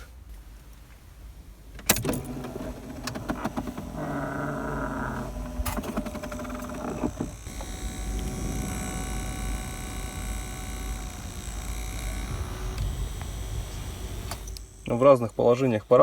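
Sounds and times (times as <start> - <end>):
small fan motor buzzing whine: 2.1 - 16.0.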